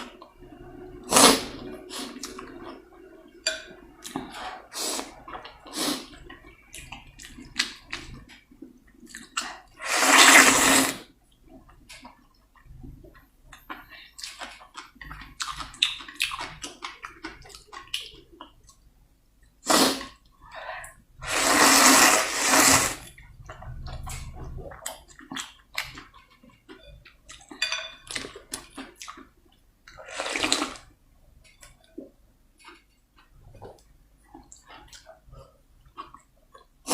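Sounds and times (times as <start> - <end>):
noodle soup slurping: 0.6 - 2.6, 9.8 - 11.1, 21.2 - 23.1, 30.0 - 30.8.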